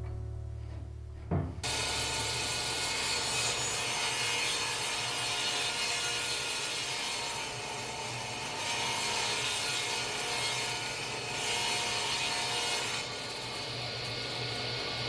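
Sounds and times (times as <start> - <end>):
steady low hum: 0.0 - 1.7
saw cutting through wood: 1.7 - 13.5.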